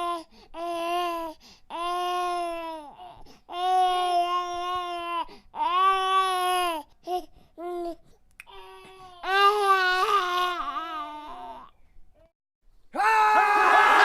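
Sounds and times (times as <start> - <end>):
baby crying: 8.5 - 11.7.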